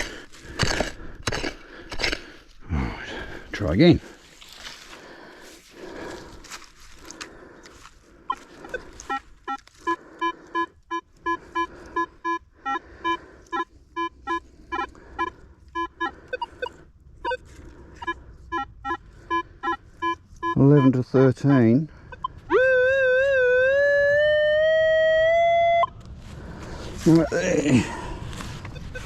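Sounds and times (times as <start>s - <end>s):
metal detector beeping: 8.3s - 26.0s, 28.6s - 29.0s.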